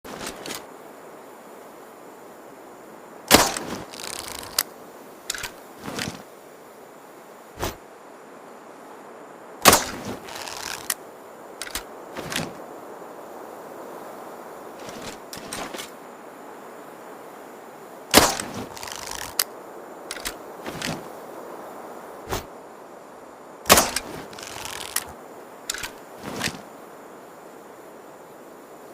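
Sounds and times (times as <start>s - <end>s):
handling clicks: 0.1s - 0.6s, 3.3s - 4.7s, 5.3s - 6.2s, 9.6s - 11.0s, 11.6s - 12.6s, 18.1s - 19.5s, 20.1s - 21.1s, 23.7s - 25.1s, 25.7s - 26.6s
crossbow release snap: 3.3s - 4.7s, 5.3s - 6.2s, 9.7s - 11.0s, 11.6s - 12.6s, 18.2s - 19.5s, 20.1s - 21.0s, 23.7s - 25.1s, 25.7s - 26.6s.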